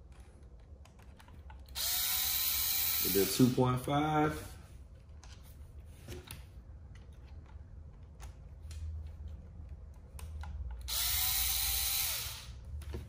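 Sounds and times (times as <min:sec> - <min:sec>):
power driver whirring: 0:01.7 - 0:03.6, 0:10.8 - 0:12.6.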